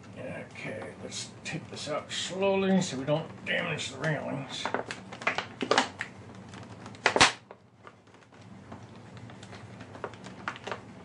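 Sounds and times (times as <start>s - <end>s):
plastic crinkle: 4.0s - 11.0s
plastic packaging clicks and rustling: 4.0s - 11.0s.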